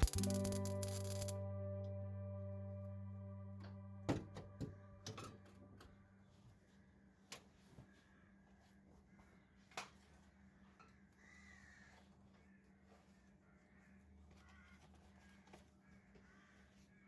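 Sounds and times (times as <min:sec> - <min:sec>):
sharp click: 0:00.0 - 0:01.4.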